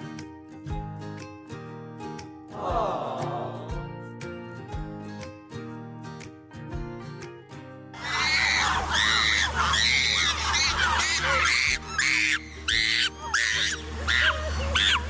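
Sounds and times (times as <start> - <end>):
animal squealing: 8.0 - 15.0.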